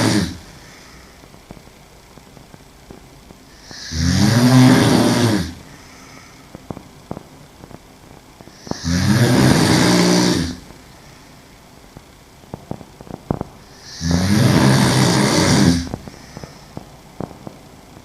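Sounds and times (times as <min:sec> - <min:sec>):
woman snoring loudly: 0:00.0 - 0:00.8, 0:03.5 - 0:06.2, 0:08.5 - 0:10.7, 0:13.6 - 0:16.6.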